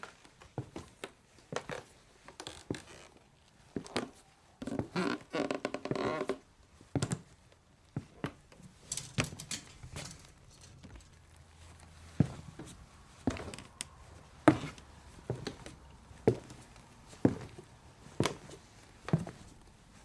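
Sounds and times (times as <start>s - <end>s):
shoes scraping on boards: 14.4s - 17.6s.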